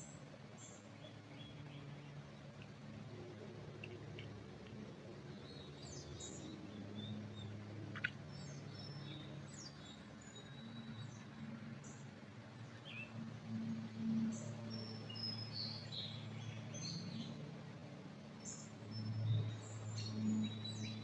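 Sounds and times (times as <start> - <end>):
small birds chirping: 3.8 - 13.2.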